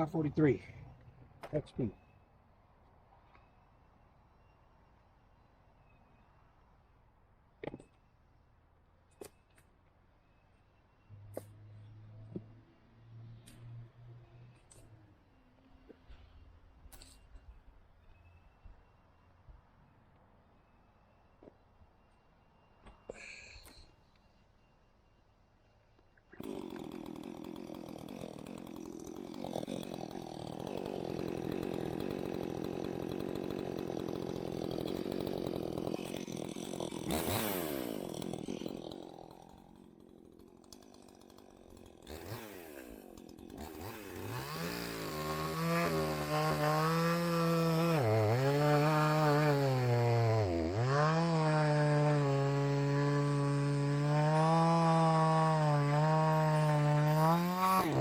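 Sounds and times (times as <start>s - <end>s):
chainsaw running: 0.0s - 0.7s, 26.3s - 58.0s.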